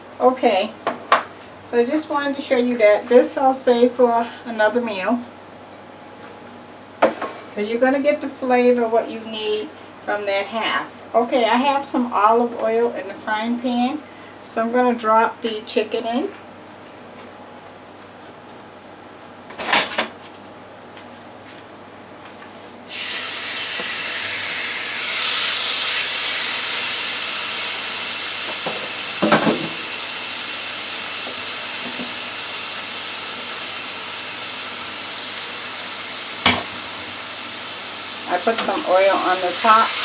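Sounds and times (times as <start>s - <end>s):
chicken sizzling in frying pan: 22.9s - 40.0s.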